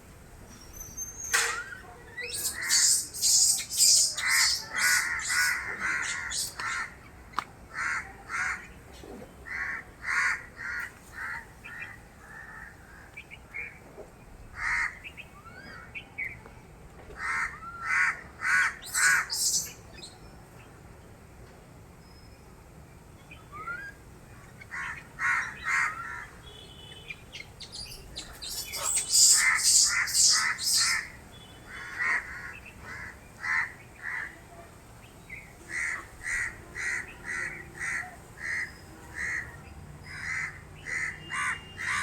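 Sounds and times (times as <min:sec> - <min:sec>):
animal harsh calls: 0:02.3 - 0:06.9, 0:28.4 - 0:31.1.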